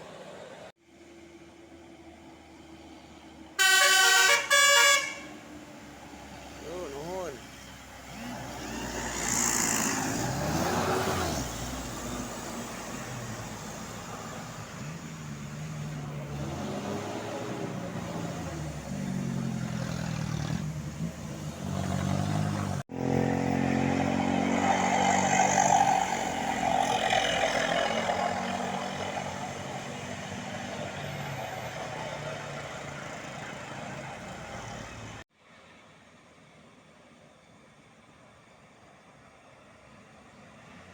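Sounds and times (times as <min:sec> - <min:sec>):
bus engines under load: 0:00.0 - 0:40.9
musical bus horns: 0:03.6 - 0:05.5.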